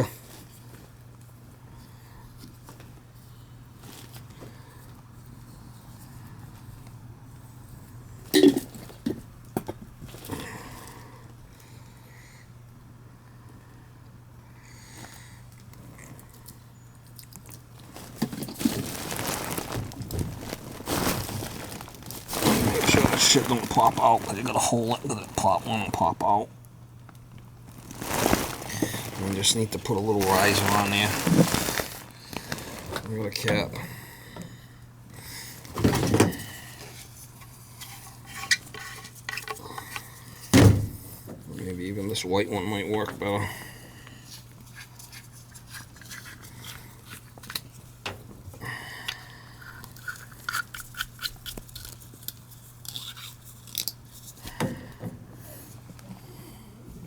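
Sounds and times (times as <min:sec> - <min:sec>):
crunching crinkling handling noises: 0:00.0 - 0:06.0, 0:07.8 - 0:11.1, 0:15.0 - 0:34.0, 0:41.2 - 0:56.2
low steady hum: 0:00.0 - 0:57.0.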